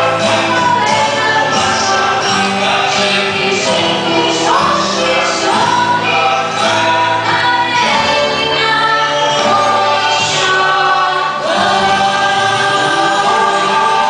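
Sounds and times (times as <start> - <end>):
choir singing with accompaniment: 0.0 - 14.0.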